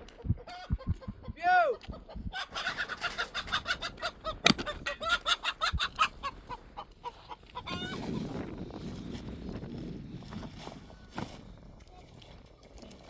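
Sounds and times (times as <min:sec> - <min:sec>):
chickens clucking: 0:00.1 - 0:08.3
chicken squawk: 0:02.3 - 0:08.0.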